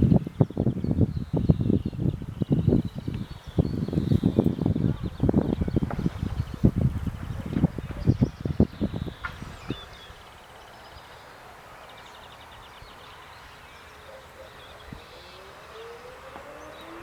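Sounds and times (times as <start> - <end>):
birds trilling: 0.2 - 17.0
distant sirens winding up: 8.8 - 17.0.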